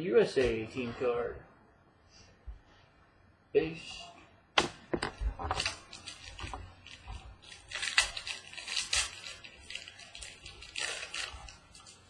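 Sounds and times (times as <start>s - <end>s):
trading cards rustling and flicking: 4.6s - 12.0s.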